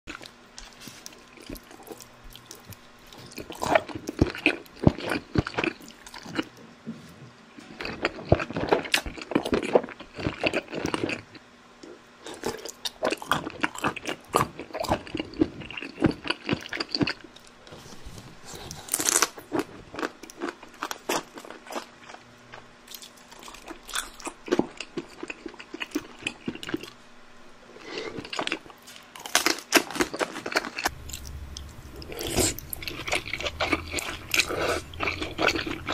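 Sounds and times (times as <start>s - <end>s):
parrot crunching food: 27.9s - 35.9s.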